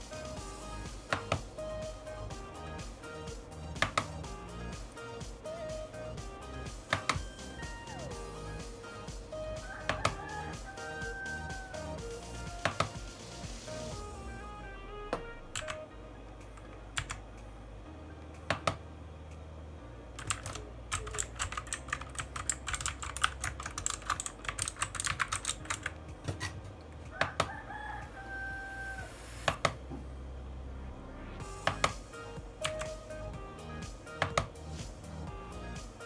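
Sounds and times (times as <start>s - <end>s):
mechanical keyboard key presses: 3.8s - 4.1s, 15.6s - 15.8s, 20.2s - 26.4s.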